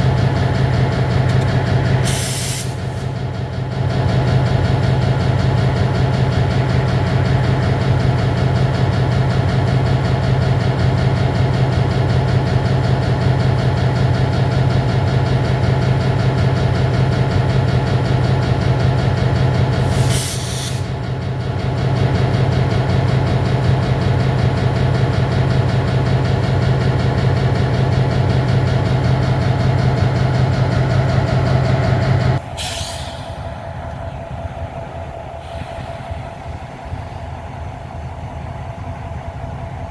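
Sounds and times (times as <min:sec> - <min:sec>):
diesel locomotive idling: 0:00.0 - 0:39.9
sharp hiss of released air: 0:02.0 - 0:03.0, 0:19.8 - 0:20.8, 0:32.6 - 0:33.4.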